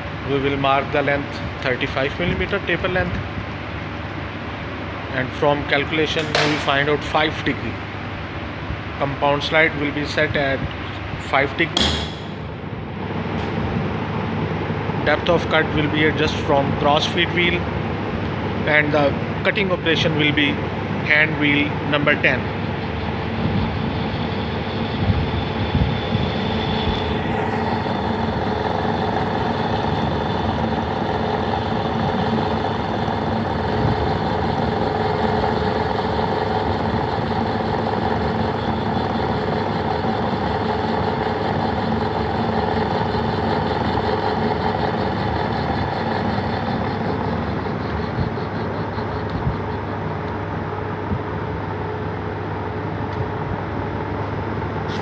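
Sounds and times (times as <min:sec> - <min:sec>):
lathe motor humming: 0:20.8 - 0:50.9.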